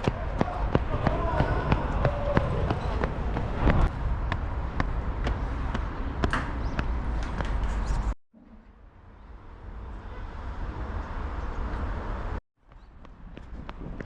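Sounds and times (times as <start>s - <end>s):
running footsteps on pavement: 0.0s - 7.6s
wind rumble on microphone: 9.0s - 14.0s.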